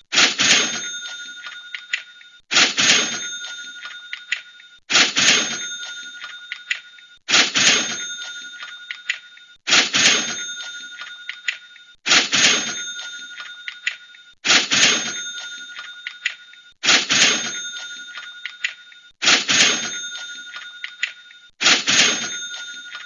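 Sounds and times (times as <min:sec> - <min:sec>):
cash register drawer clatter: 0:00.0 - 0:06.7, 0:07.3 - 0:09.1, 0:09.7 - 0:11.5, 0:12.1 - 0:13.8, 0:14.4 - 0:23.0
cash register bell ringing: 0:00.0 - 0:23.0.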